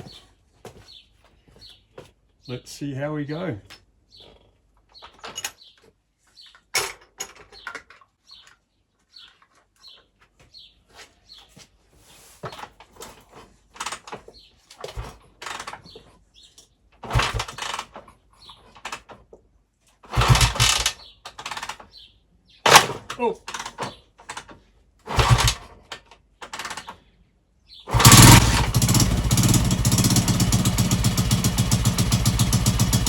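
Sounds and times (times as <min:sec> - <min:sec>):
motorcycle kick-start cranking: 0:17.0 - 0:18.1, 0:20.1 - 0:21.8, 0:22.7 - 0:24.5, 0:25.1 - 0:27.0, 0:27.9 - 0:33.0.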